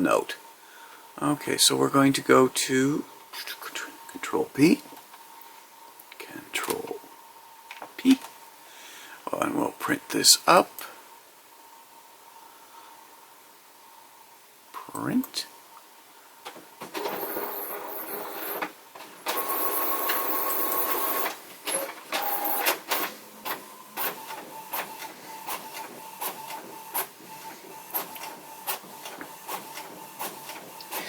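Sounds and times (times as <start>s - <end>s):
printer printing: 16.8s - 31.0s.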